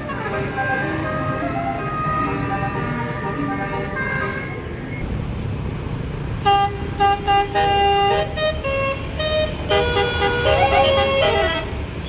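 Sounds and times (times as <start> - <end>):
bus horn playing a tune: 0.0 - 3.9, 6.4 - 11.9.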